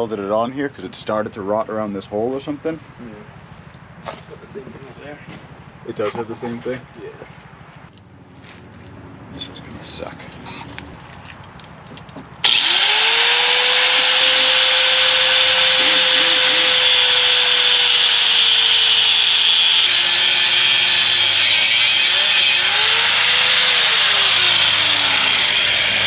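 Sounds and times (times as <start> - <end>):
motor whine: 12.4 - 26.0
power tool cutting steel: 12.4 - 26.0.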